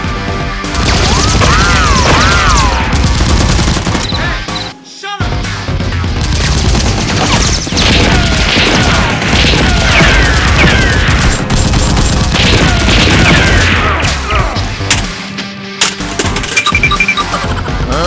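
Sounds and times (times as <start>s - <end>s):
background music: 0.0s - 18.0s
rapid gunfire: 0.7s - 4.3s, 6.1s - 14.4s.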